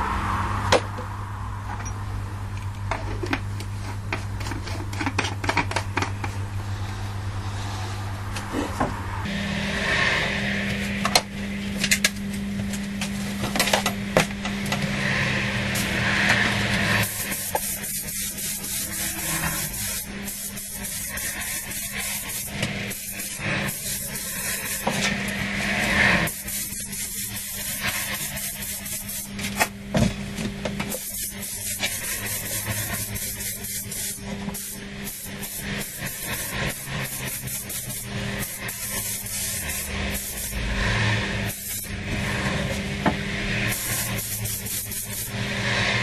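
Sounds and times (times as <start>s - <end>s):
steady hum: 0.0s - 46.0s
compressed air hissing: 15.0s - 29.4s, 30.9s - 42.6s, 43.4s - 46.0s.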